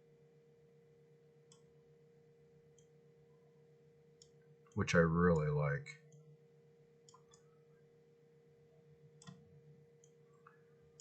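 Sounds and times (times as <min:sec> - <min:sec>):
low steady hum: 0:00.0 - 0:11.0
faint clicks: 0:01.5 - 0:01.7, 0:09.2 - 0:09.4, 0:10.0 - 0:11.0.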